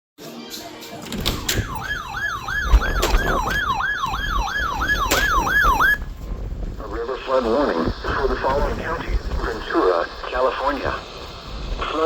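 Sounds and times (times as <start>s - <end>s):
low rumble: 1.2s - 12.0s
siren wailing: 1.6s - 6.1s.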